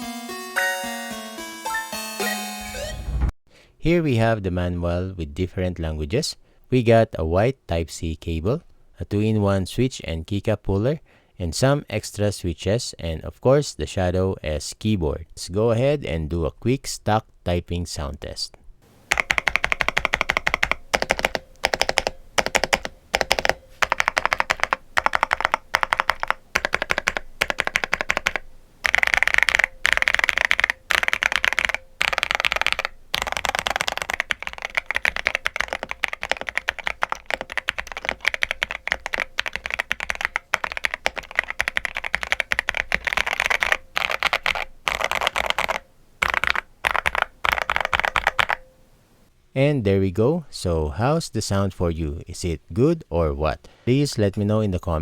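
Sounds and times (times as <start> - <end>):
fast typing on mechanical keyboard: 19.1 - 48.6.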